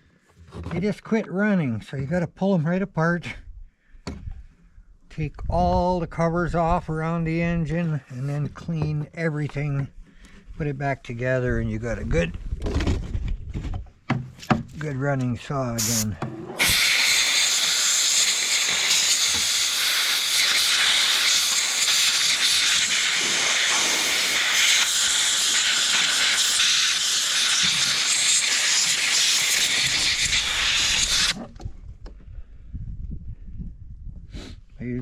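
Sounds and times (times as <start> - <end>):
compressed air hissing: 15.8 - 31.4.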